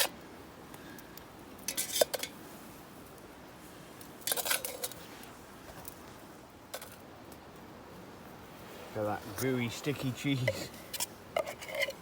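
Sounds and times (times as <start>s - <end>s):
metal utensil scraping pan: 4.3s - 5.0s, 10.4s - 12.0s.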